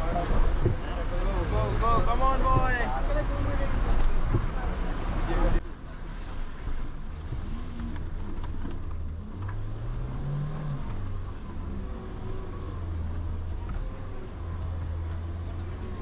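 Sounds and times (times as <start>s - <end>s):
engine running and revving: 6.2s - 16.0s.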